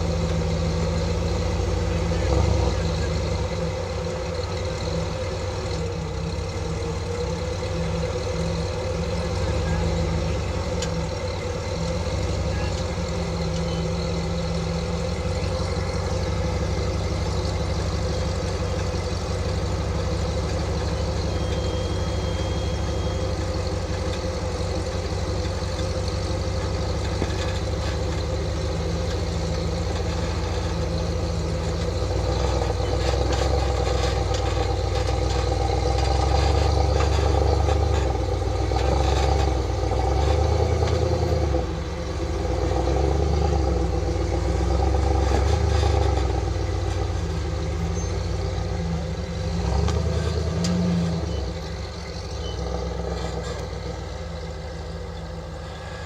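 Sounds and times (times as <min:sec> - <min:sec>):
vehicle engine running: 0:00.0 - 0:56.0
rattling and clatter: 0:23.4 - 0:56.0.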